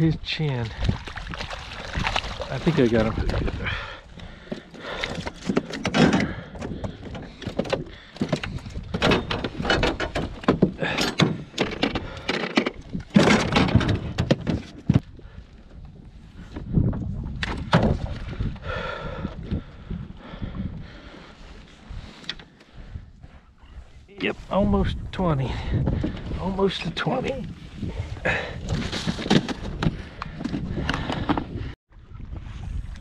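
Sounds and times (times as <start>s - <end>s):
knocks and thuds on a boat: 4.4s - 15.2s, 16.5s - 18.2s, 25.7s - 26.3s.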